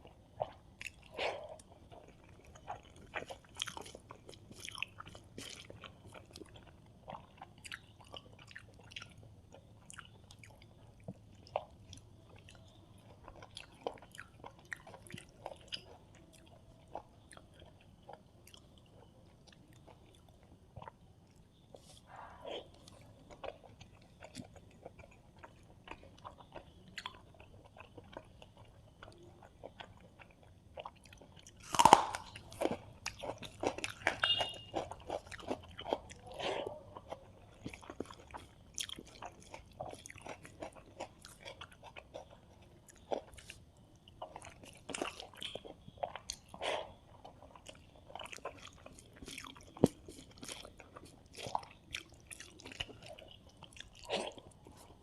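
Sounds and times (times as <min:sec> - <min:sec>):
person chewing crunchy food: 0:00.0 - 0:55.0.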